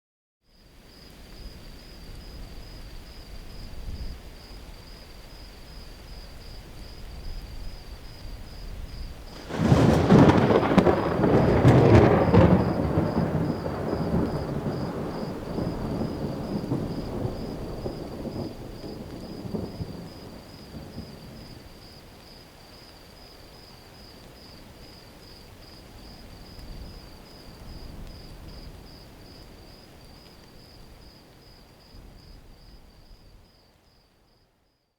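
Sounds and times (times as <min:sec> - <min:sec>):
thunder clap and rumble: 0:08.9 - 0:21.6.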